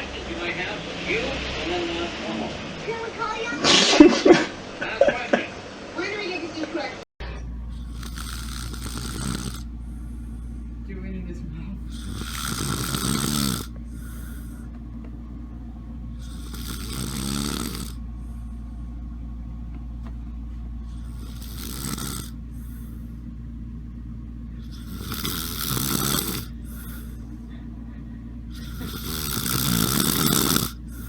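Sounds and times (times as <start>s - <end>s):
person snoring: 7.7s - 10.6s, 11.8s - 14.8s, 16.1s - 18.7s, 20.8s - 23.1s, 24.6s - 27.6s, 28.5s - 31.0s.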